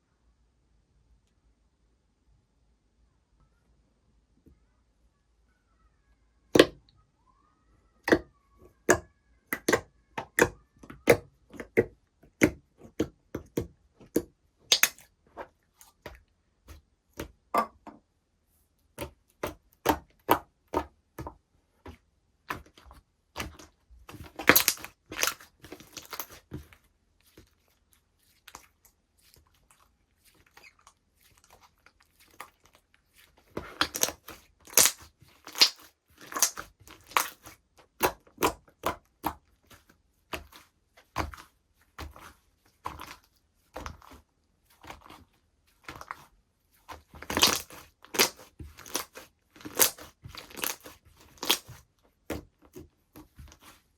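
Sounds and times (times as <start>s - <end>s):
slime popping and clicking: 14.7s - 15.0s, 24.4s - 26.3s, 33.8s - 37.4s, 47.3s - 49.1s
slime crackling: 22.5s - 53.8s.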